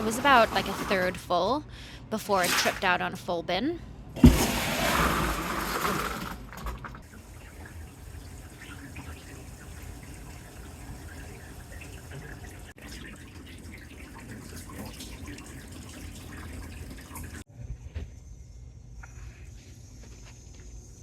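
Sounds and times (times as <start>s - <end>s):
water running and dripping: 7.0s - 17.5s.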